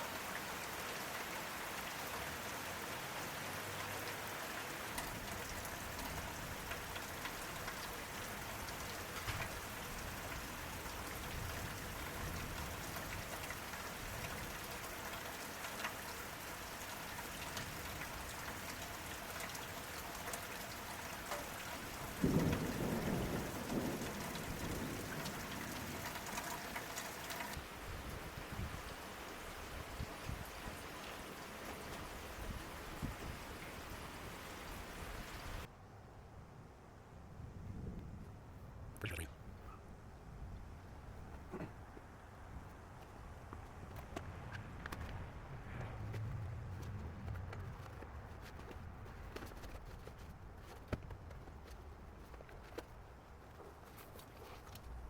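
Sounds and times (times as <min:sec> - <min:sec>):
steady rain: 0:00.0 - 0:35.7, 0:42.2 - 0:55.0
water dripping: 0:03.6 - 0:27.6, 0:39.0 - 0:39.4
thunder rumbling: 0:21.9 - 0:26.2.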